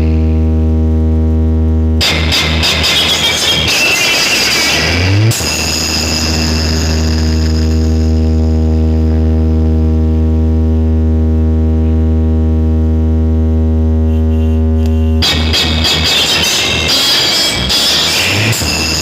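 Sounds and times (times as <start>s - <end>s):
deep bass tone: 0.0s - 19.0s
loud noisy music: 2.0s - 10.6s, 14.1s - 19.0s.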